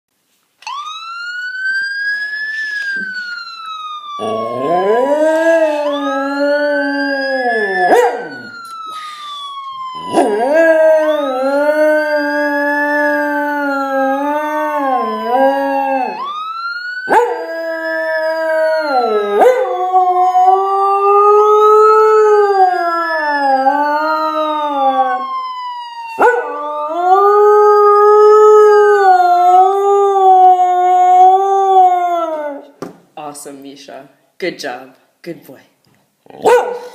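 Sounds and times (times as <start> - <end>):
police siren wailing: 0.6 - 32.7
dog howling: 4.2 - 8.5.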